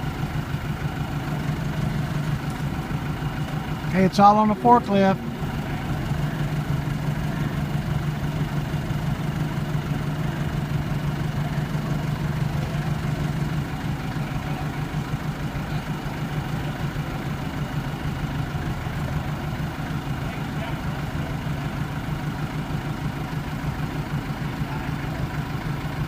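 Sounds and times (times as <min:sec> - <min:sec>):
forklift engine humming: 0:00.0 - 0:26.0.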